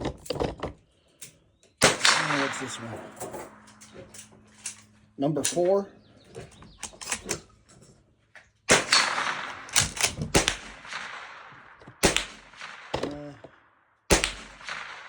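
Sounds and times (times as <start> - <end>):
shotgun shots echoing: 1.8 - 4.7, 8.7 - 15.0.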